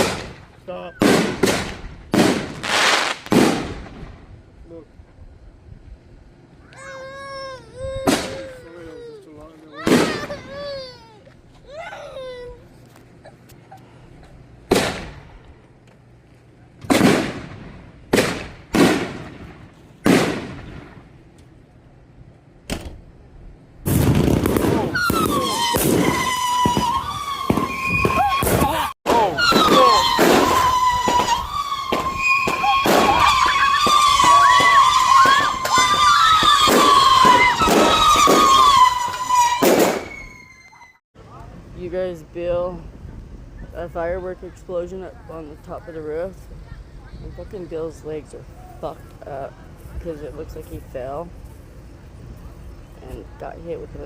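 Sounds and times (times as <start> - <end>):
fireworks booming with echo: 0.0 - 4.3, 8.0 - 8.6, 9.8 - 10.7, 14.7 - 15.4, 16.8 - 21.2, 23.8 - 40.3.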